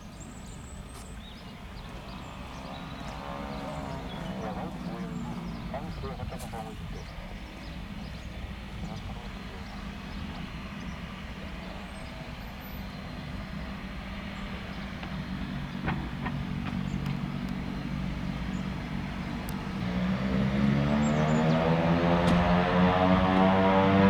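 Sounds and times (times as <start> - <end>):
turboprop engines running: 0.0 - 24.0.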